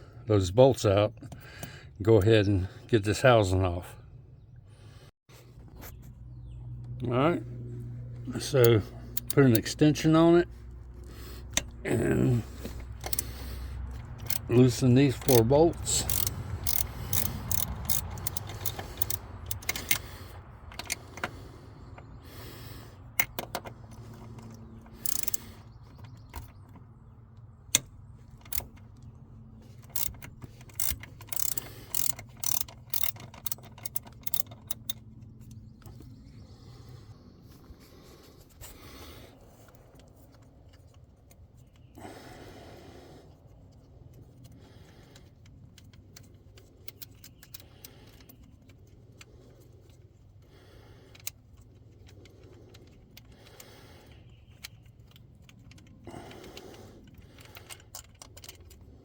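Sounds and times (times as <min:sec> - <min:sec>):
ratchet wrench clicking: 0:08.3 - 0:10.2, 0:11.4 - 0:11.8, 0:12.4 - 0:21.4, 0:23.2 - 0:26.5, 0:27.7 - 0:28.8, 0:29.7 - 0:35.1.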